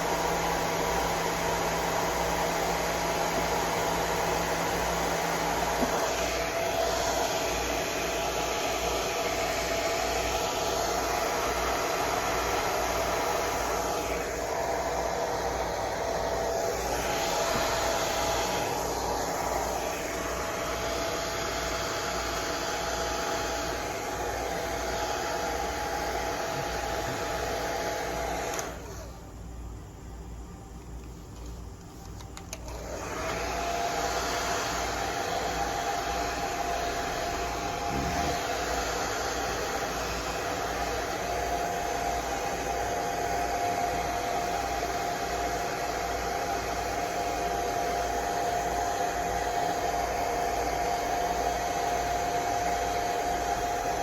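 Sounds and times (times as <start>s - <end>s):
hair dryer blowing: 0.0s - 29.4s, 32.5s - 54.0s.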